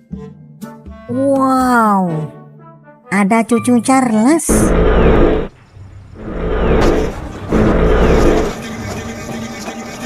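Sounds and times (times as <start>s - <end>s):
background music: 0.0s - 4.8s
car engine: 4.5s - 8.6s.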